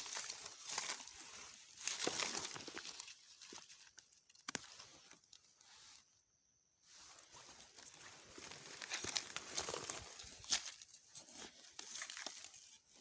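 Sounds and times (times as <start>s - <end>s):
dry leaves rustling and crackling: 0.0s - 5.0s, 7.4s - 13.0s
small snaps and clicks: 4.3s - 4.7s.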